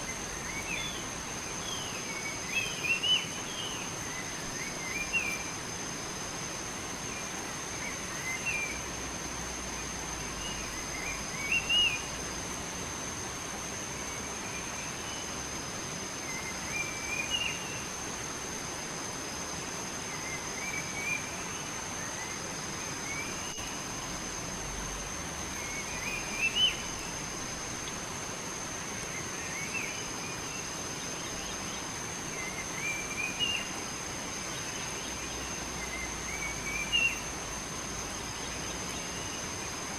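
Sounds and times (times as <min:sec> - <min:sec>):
songbird chirping: 0:00.0 - 0:05.6, 0:25.4 - 0:28.1, 0:34.4 - 0:37.4
steady background hiss: 0:00.0 - 0:39.9.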